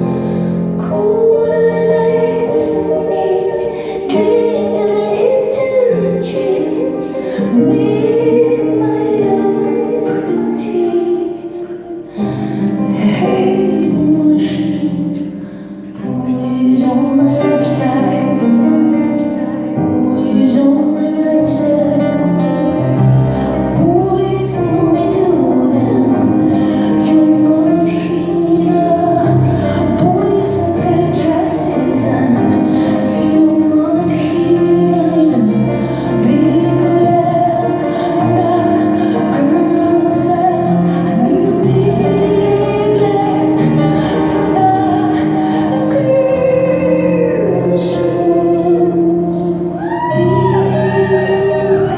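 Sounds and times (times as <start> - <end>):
keyboard accompaniment: 0.0 - 51.9
woman singing live: 0.0 - 51.9.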